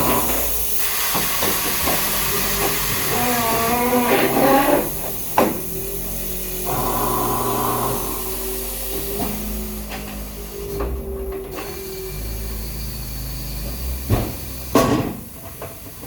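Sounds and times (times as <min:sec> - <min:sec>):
steady whine: 0:00.0 - 0:14.3
tire-changing machine hissing: 0:00.0 - 0:16.0
wavering squeal: 0:02.3 - 0:05.0.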